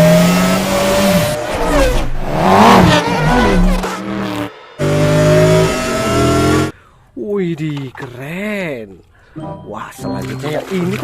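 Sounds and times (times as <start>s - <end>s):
car engine revving: 0.0s - 6.7s.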